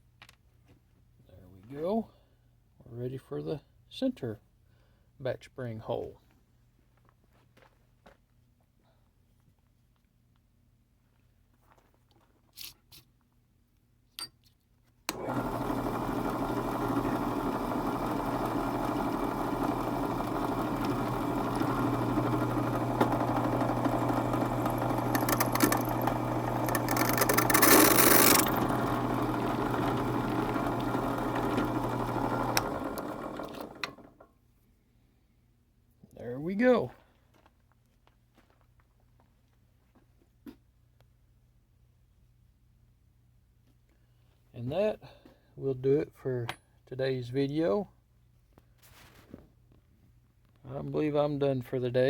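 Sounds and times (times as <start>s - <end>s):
drill press motor humming: 15.1s - 34.2s.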